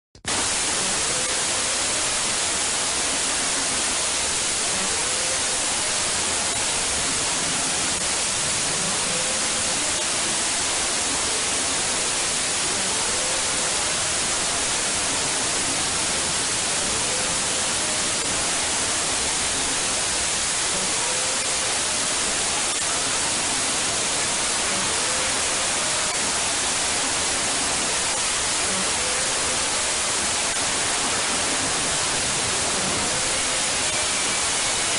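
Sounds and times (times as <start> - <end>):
white-noise static hiss: 0.2 - 34.9.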